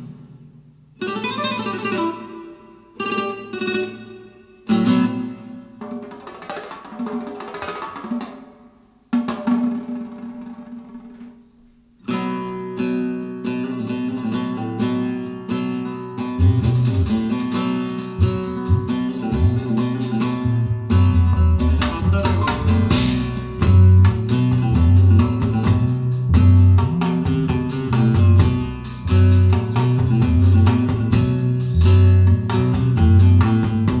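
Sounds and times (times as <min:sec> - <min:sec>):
guitar-led music over loudspeakers: 0:12.0 - 0:34.0
deep bass line: 0:18.2 - 0:19.8, 0:20.4 - 0:34.0.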